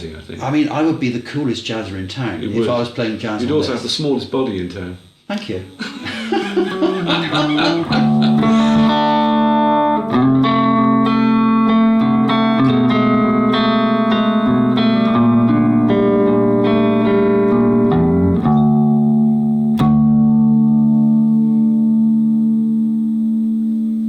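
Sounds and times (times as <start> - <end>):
electric guitar chords and notes: 6.0 - 24.0.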